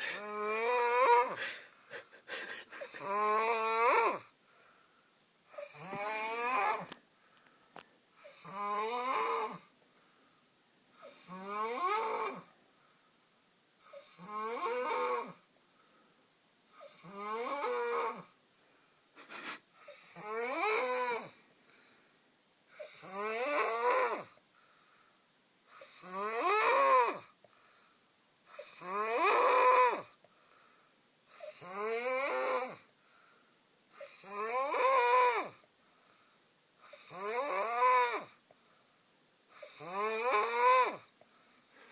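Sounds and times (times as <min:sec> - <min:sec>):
man snoring: 0:00.0 - 0:04.3, 0:05.6 - 0:06.9, 0:08.2 - 0:09.7, 0:11.0 - 0:12.5, 0:13.9 - 0:15.4, 0:16.8 - 0:18.4, 0:19.2 - 0:21.4, 0:22.8 - 0:24.4, 0:25.8 - 0:27.3, 0:28.5 - 0:30.2, 0:31.4 - 0:32.9, 0:34.0 - 0:35.6, 0:36.9 - 0:38.4, 0:39.6 - 0:41.1.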